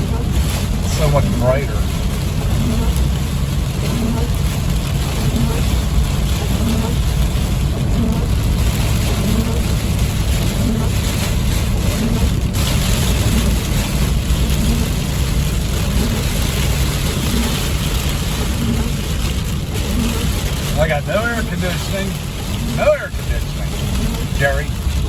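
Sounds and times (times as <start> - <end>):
engine and road rumble: 0.0 - 25.0
rain hissing on vehicle: 0.0 - 25.0.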